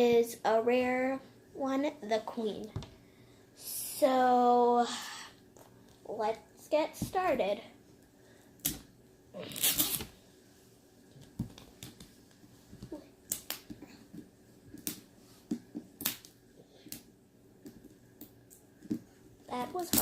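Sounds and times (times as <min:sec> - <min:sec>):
packaging tearing: 0:09.4 - 0:10.1.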